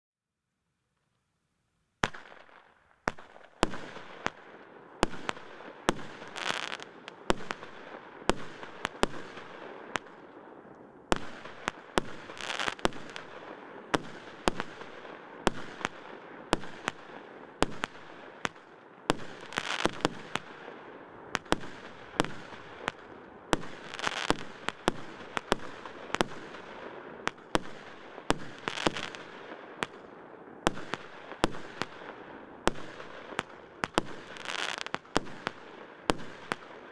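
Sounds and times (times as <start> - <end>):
firework hissing crackle: 5.0 - 10.2, 11.1 - 16.0, 17.6 - 20.6, 21.3 - 30.0, 32.7 - 35.6
firework bangs: 11.1 - 36.9.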